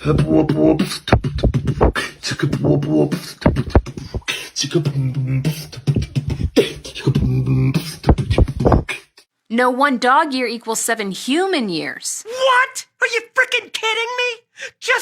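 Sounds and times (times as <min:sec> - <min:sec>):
hummed bass notes: 0:00.0 - 0:04.2
beatboxing drum strokes: 0:00.0 - 0:09.3.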